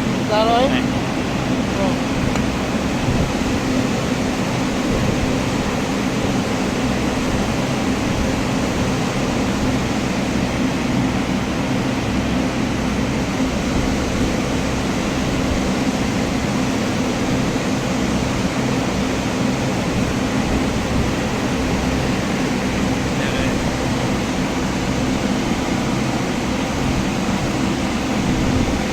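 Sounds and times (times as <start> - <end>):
engine idling with a knock: 2.2 - 3.4.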